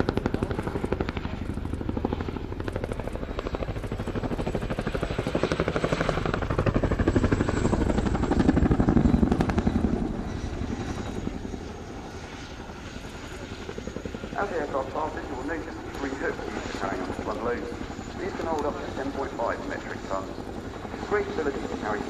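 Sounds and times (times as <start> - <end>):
helicopter rotor thudding: 0.0 - 12.0.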